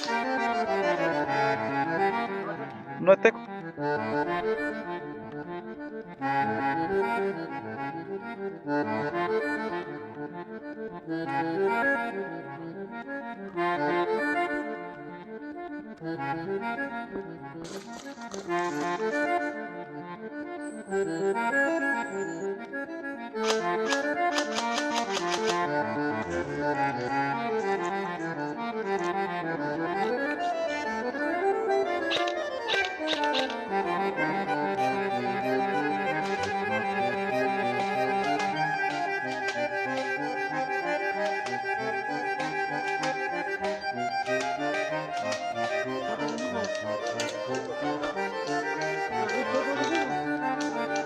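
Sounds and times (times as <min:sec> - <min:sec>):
sharp percussive clicks: 0:00.0 - 0:01.3, 0:17.6 - 0:19.4, 0:23.4 - 0:26.6, 0:27.4 - 0:29.2, 0:31.9 - 0:34.0, 0:35.6 - 0:51.0
melodic instrumental music: 0:00.0 - 0:51.0.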